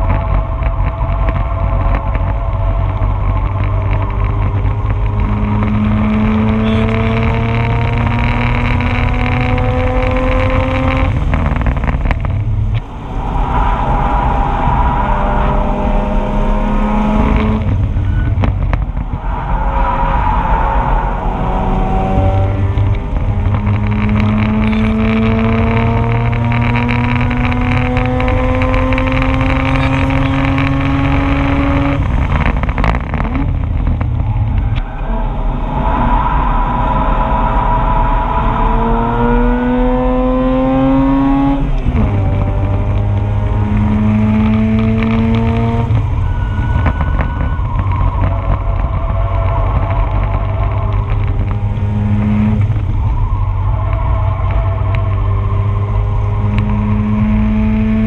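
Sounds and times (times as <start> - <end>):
low road rumble: 0.0 - 58.0
rotary engine pulling hard: 3.5 - 58.0.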